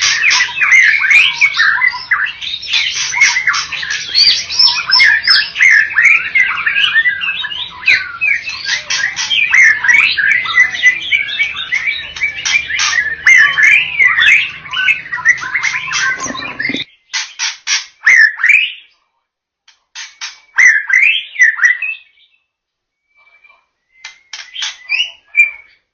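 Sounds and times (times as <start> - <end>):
bird singing whistles and trills: 0.0 - 18.9, 20.2 - 25.8.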